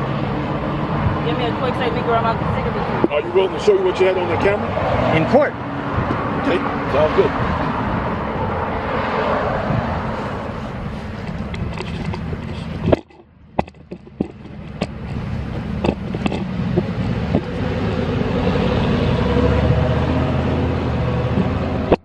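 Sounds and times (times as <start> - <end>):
vehicle engine and tyre noise: 0.0 - 22.0
sharp clicks and taps: 11.2 - 17.6.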